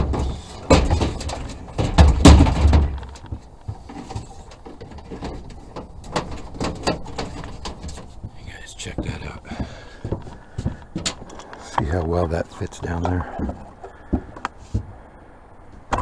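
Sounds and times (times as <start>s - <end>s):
heavy object thumps: 0.0s - 5.5s
metal scraping: 0.0s - 9.4s.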